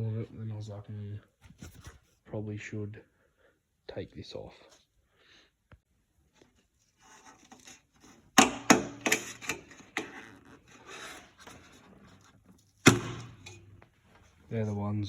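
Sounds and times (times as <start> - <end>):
plastic trim rubbing and scraping: 6.8 - 14.8.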